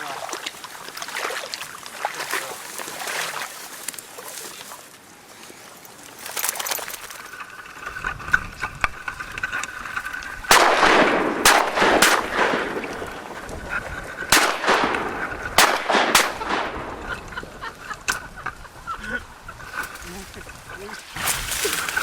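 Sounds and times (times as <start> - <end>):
shotgun shots echoing: 10.5 - 13.6, 14.2 - 17.3.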